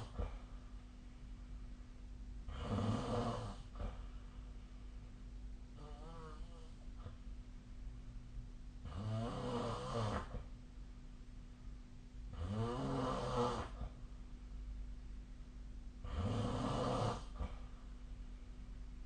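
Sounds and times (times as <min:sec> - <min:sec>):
low steady hum: 0:00.0 - 0:19.0
person snoring: 0:02.5 - 0:04.0, 0:08.8 - 0:10.4, 0:12.3 - 0:13.9, 0:16.0 - 0:17.6.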